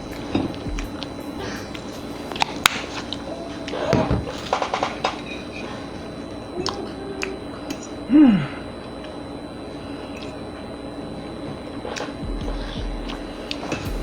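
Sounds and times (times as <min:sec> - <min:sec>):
soft chewing: 0:00.0 - 0:14.0
person humming mm: 0:06.6 - 0:08.8
mouth clicks: 0:06.6 - 0:09.2.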